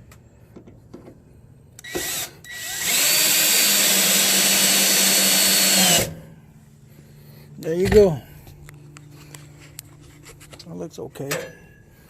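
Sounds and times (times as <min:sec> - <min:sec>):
power drill whining: 0:01.8 - 0:06.2.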